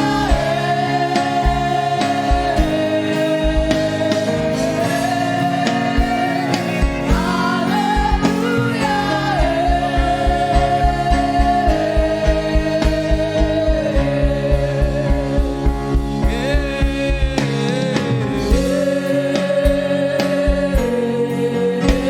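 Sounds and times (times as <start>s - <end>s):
gospel singing over a band: 0.0s - 22.0s
kick drum beat: 1.4s - 4.1s, 6.0s - 18.9s.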